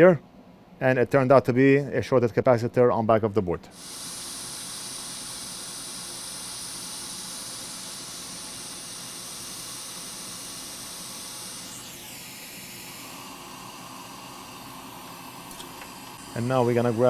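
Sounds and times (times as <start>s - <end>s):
blower hissing: 3.7s - 17.0s
blower spinning down whine: 3.8s - 17.0s.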